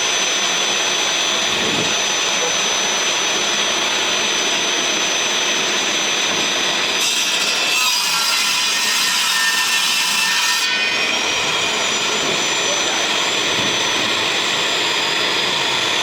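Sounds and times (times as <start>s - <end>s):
power tool cutting board: 0.0s - 16.0s.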